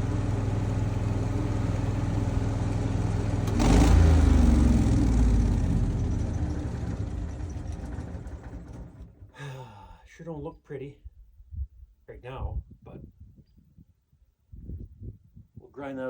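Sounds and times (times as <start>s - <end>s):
engine running: 0.0s - 9.5s.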